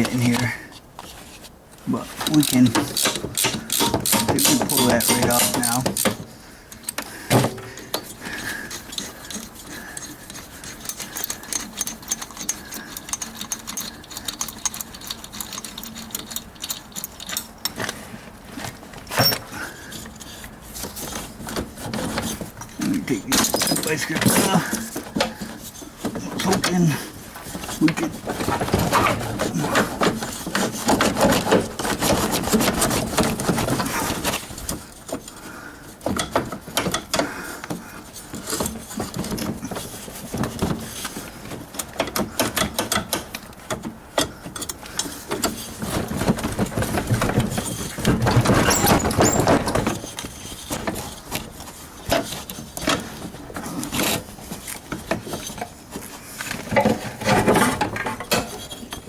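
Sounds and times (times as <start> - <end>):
hand tools clinking on metal: 2.2 - 6.2, 7.9 - 17.8, 22.6 - 25.5.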